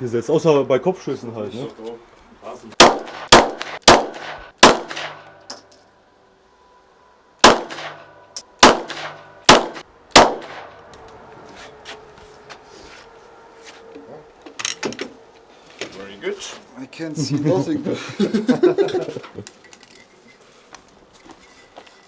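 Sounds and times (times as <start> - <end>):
pistol shots echoing: 2.8 - 5.4, 7.4 - 10.7.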